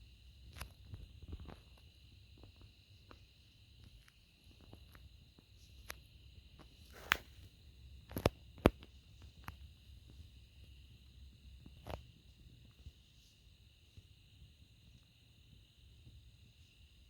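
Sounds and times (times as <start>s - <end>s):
insect chirring: 0.0s - 17.0s
sharp snaps and crackles: 0.4s - 10.2s, 11.5s - 12.8s.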